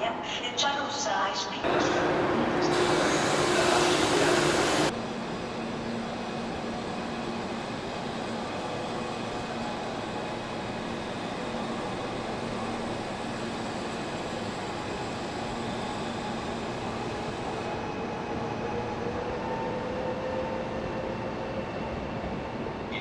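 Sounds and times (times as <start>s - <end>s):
electric train motor whine: 1.6s - 19.8s.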